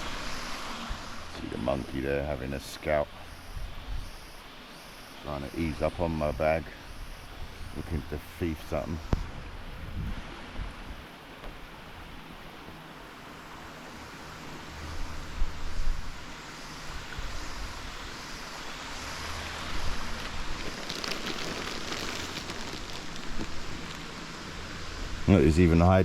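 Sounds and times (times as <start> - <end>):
wind buffeting microphone: 9.0 - 11.1.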